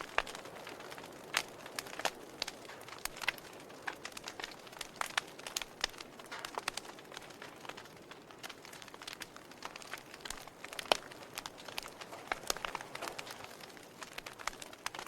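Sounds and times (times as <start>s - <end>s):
logs crackling in fireplace: 0.0s - 15.0s.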